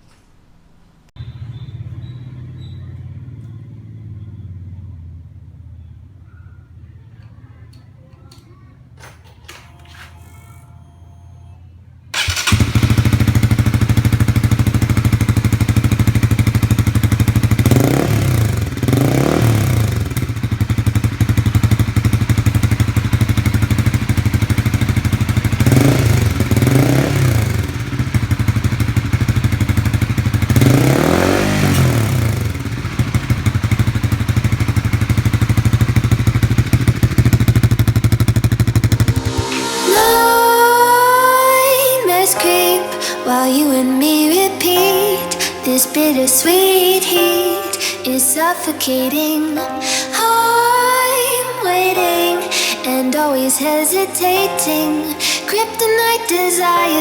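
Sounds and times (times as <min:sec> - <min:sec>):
motorcycle engine idling and revving: 0:01.2 - 0:10.6, 0:12.1 - 0:42.5.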